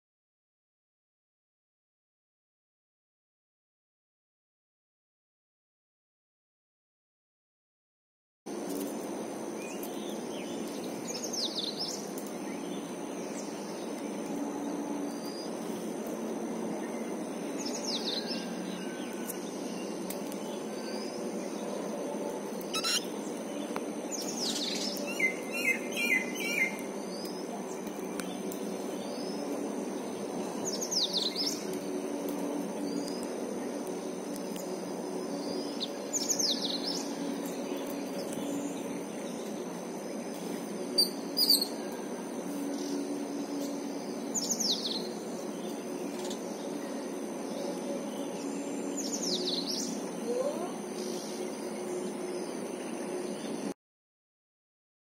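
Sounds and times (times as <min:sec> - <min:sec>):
low background hum: 0:08.5 - 0:53.8
bird calling: 0:22.7 - 0:23.1, 0:24.4 - 0:26.9
bird chirps: 0:22.7 - 0:23.1, 0:24.1 - 0:28.4, 0:40.9 - 0:41.9.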